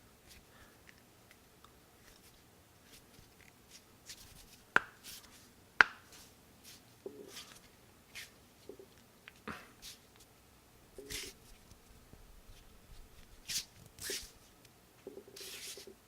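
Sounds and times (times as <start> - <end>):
rustling of hands: 2.0 - 10.3, 11.0 - 16.0.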